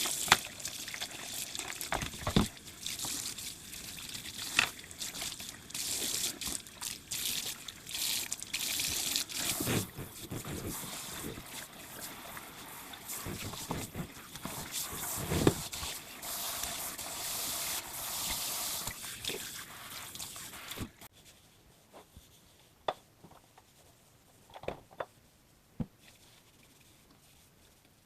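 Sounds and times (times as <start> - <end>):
water running from a tap: 0.0 - 21.0.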